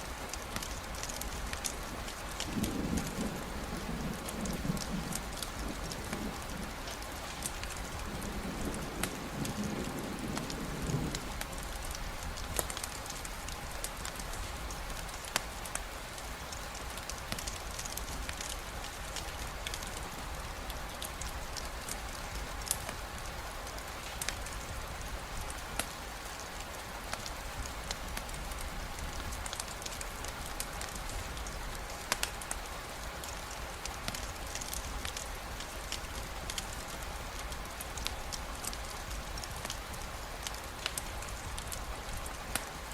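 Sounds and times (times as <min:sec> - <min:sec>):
steady rain falling: 0:00.0 - 0:42.9.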